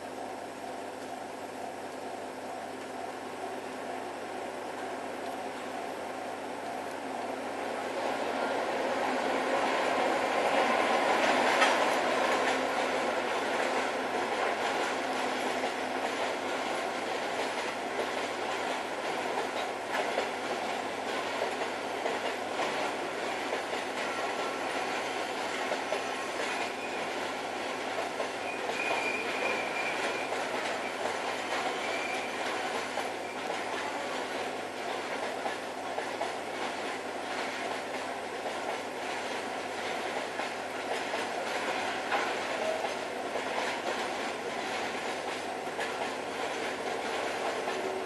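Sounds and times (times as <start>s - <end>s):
wheel squeal: 28.4s - 32.4s.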